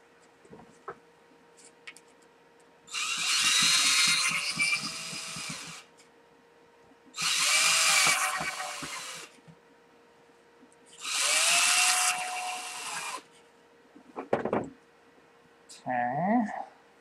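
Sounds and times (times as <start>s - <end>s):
power drill running: 2.9s - 5.9s, 7.2s - 9.4s, 11.0s - 13.3s.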